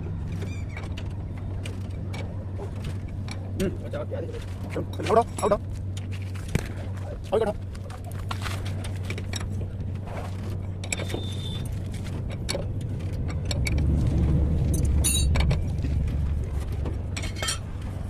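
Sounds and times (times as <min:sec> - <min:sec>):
metallic clinks and scrapes: 0:14.6 - 0:15.6, 0:17.2 - 0:17.7.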